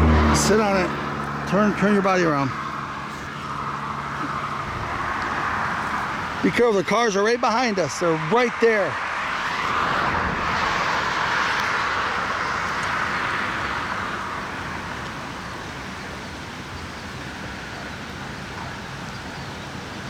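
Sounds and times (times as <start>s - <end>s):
car driving past: 0.0s - 6.6s, 8.0s - 15.9s.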